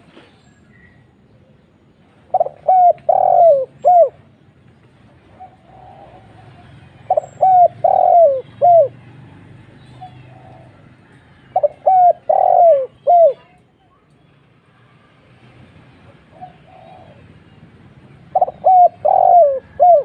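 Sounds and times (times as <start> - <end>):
dove cooing: 2.3 - 4.3, 5.3 - 9.0, 9.8 - 13.5, 16.2 - 17.4, 18.1 - 20.0.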